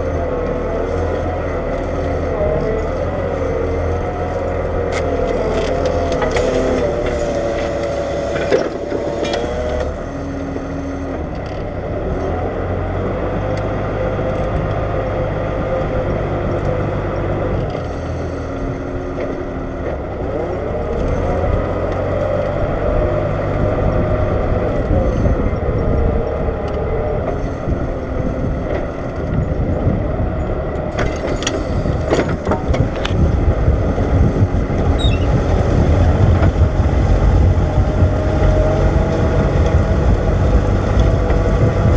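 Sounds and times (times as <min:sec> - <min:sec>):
tractor diesel engine running: 0:00.0 - 0:41.9.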